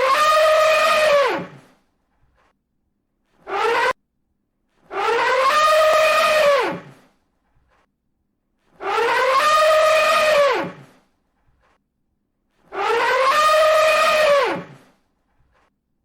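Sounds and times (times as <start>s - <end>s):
elephant trumpeting: 0.0s - 1.7s, 3.4s - 4.0s, 4.8s - 7.0s, 8.8s - 11.0s, 12.6s - 15.0s.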